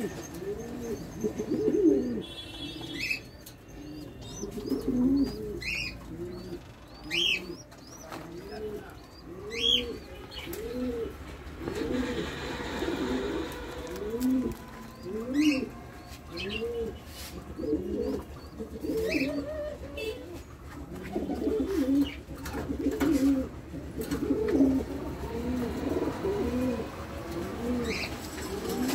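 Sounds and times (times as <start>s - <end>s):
pigeons cooing: 0.0s - 28.9s.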